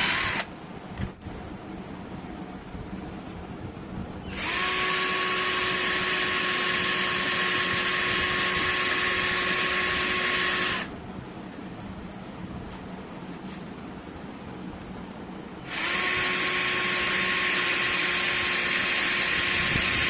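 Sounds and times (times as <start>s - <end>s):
cordless drill whining: 0.0s - 0.5s, 4.3s - 10.9s, 15.7s - 20.0s.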